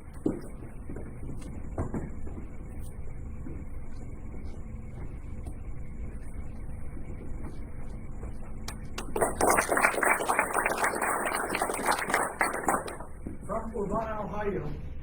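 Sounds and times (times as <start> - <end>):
low room hum: 0.0 - 15.0
audience applause: 9.0 - 13.1.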